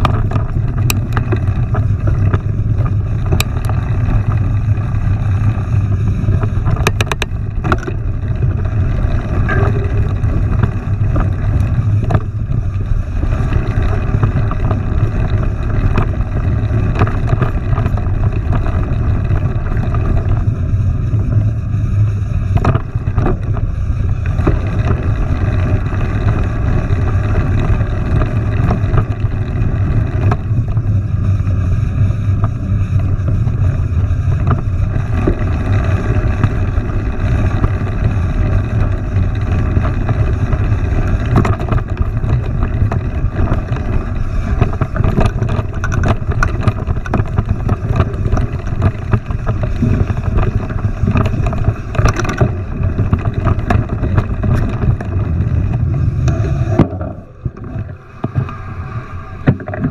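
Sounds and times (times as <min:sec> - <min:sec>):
clicks and rattles: 0:00.0 - 0:20.5, 0:22.5 - 0:30.8, 0:34.3 - 0:58.6, 0:59.4 - 0:59.9
wind buffeting microphone: 0:00.0 - 0:59.9.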